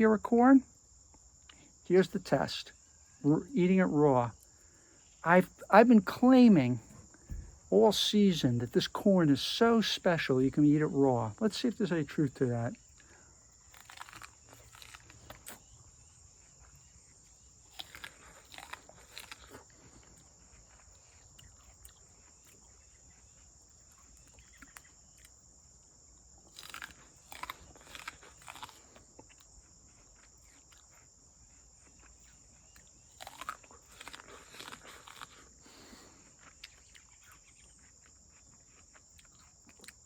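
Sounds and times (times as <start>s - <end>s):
crickets chirring: 0.0s - 40.0s
person biting and chewing corn: 12.8s - 40.0s.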